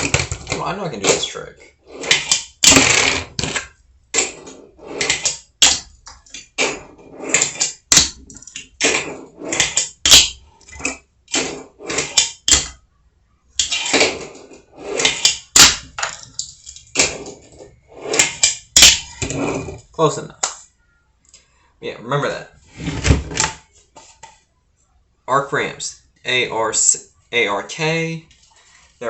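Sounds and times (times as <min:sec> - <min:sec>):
fingerboard wheels rolling: 0:00.0 - 0:12.6, 0:13.6 - 0:19.9.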